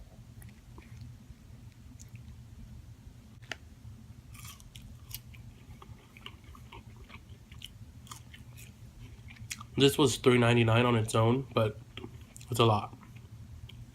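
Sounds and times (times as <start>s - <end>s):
low steady hum: 0.0s - 13.9s
person chewing food: 0.4s - 2.4s, 4.3s - 9.8s, 11.8s - 13.9s.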